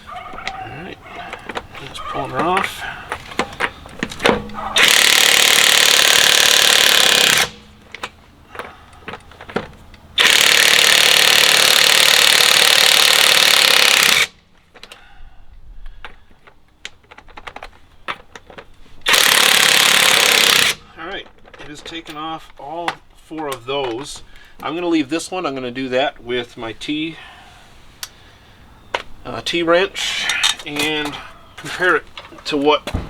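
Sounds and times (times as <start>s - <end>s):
impact wrench hammering: 4.2s - 7.7s, 10.2s - 14.3s, 19.1s - 20.8s.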